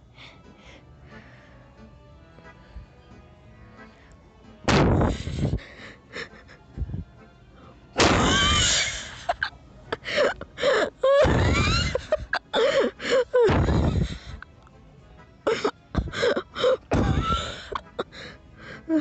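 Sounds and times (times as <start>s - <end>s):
person wheeze-laughing: 4.9s - 6.8s, 8.0s - 14.5s, 15.4s - 19.0s.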